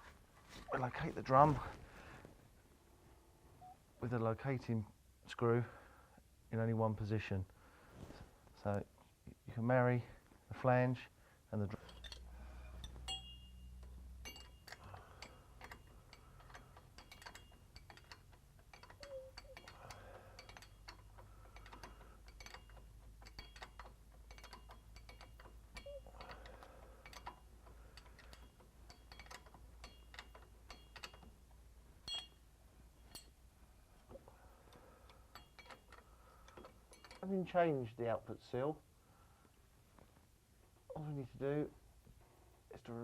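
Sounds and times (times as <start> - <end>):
metal tools clinking: 11.7 - 31.4, 32.0 - 33.4, 34.9 - 37.6.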